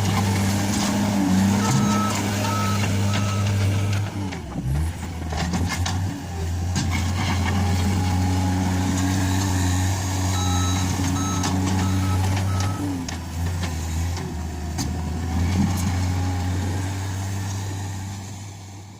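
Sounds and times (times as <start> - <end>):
loader engine running: 0.0 - 18.9
reversing alarm beeping: 1.6 - 3.6, 10.3 - 13.0.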